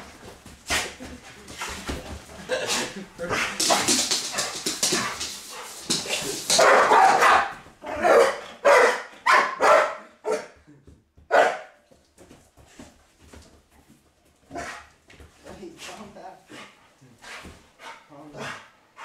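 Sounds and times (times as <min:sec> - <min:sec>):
dog barking: 0:06.5 - 0:10.6, 0:11.3 - 0:11.8.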